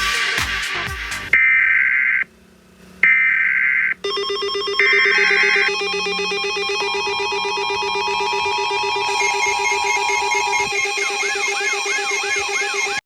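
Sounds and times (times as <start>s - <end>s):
pulsing electronic alert tone: 3.0s - 13.0s
two-tone digital data bursts: 3.0s - 13.0s.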